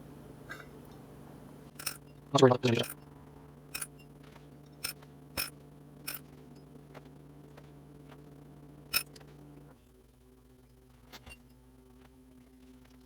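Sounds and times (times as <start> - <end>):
steady low hum: 0.0 - 13.0
small metal parts clicking: 1.8 - 2.0, 2.8 - 3.0, 3.7 - 4.0, 4.8 - 5.5.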